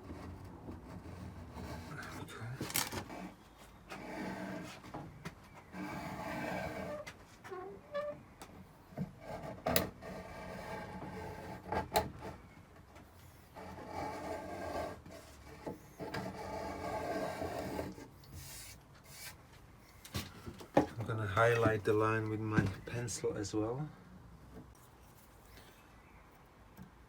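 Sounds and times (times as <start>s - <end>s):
tool scraping along wood: 0.0s - 7.2s, 9.0s - 12.5s, 13.2s - 19.4s.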